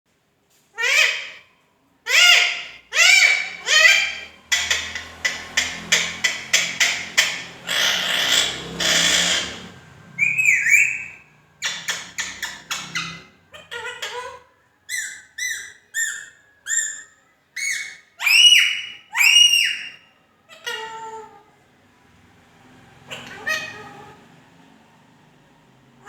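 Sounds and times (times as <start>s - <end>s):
parrot squawk: 0.8s - 21.5s, 23.0s - 24.3s
parrot whistling: 2.1s - 20.1s.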